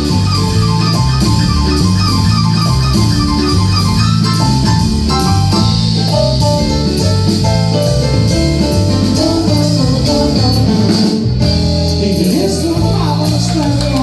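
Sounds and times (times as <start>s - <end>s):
live band playing: 0.0s - 14.0s.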